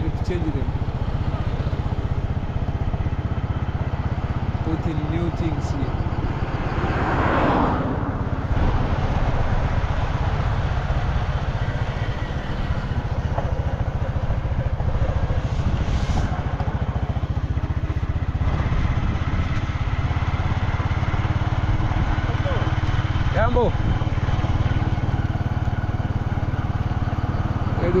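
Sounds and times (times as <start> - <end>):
motorcycle engine running: 0.0 - 28.0
broad rushing noise: 15.1 - 16.9.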